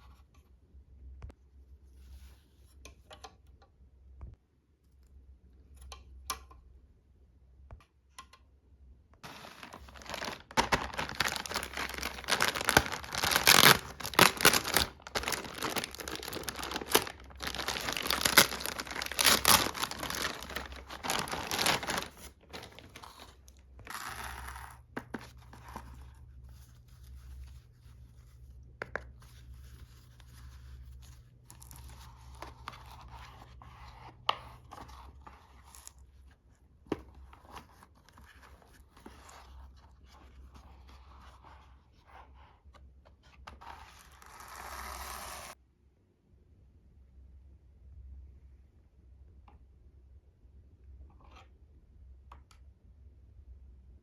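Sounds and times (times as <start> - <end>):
packaging tearing and rustling: 9.2 - 24.6.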